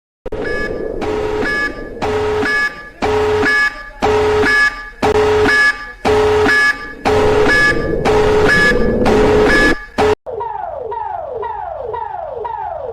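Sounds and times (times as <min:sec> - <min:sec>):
electronic alarm beeps rising in pitch: 0:00.3 - 0:10.2.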